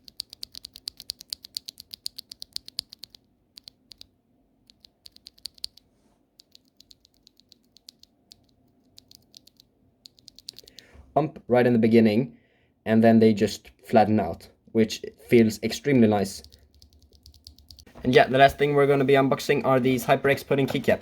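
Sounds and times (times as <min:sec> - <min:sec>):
mechanical keyboard clacking: 0:00.0 - 0:04.1, 0:04.7 - 0:05.8, 0:06.4 - 0:10.8, 0:16.4 - 0:17.9.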